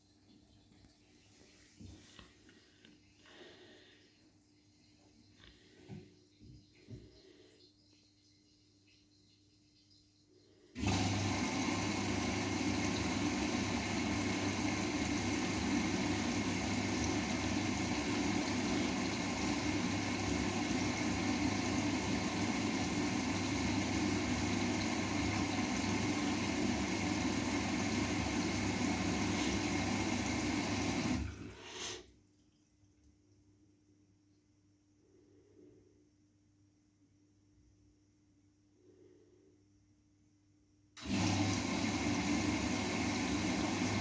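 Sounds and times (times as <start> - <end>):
water rushing through washing machine: 10.8 - 32.0, 41.0 - 44.0.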